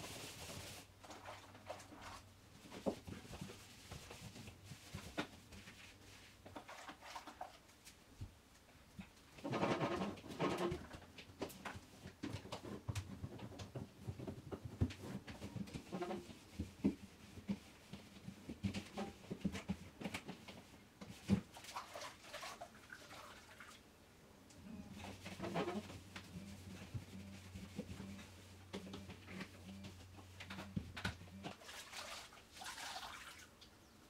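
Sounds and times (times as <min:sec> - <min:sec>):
low steady hum: 0:23.6 - 0:31.6.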